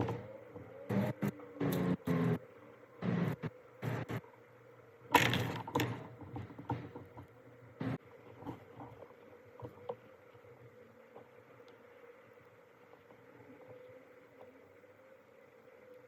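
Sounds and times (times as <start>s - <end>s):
hard objects knocking and clattering: 5.2s - 7.3s.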